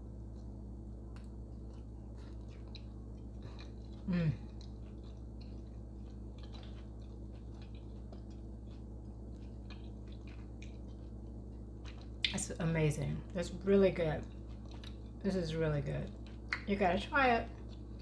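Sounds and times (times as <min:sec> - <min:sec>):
person chewing food: 0:00.1 - 0:12.6, 0:14.2 - 0:15.4, 0:16.0 - 0:16.7, 0:17.5 - 0:18.0
person murmuring mm: 0:04.1 - 0:04.5.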